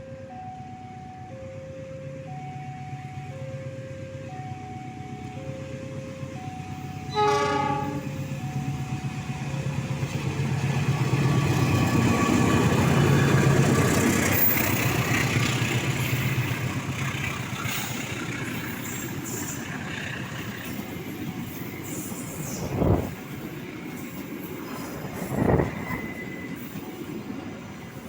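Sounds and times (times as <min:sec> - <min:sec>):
level crossing warning signal: 0:00.0 - 0:10.1
train passing rumble: 0:00.0 - 0:28.0
train horn blast: 0:07.0 - 0:08.2.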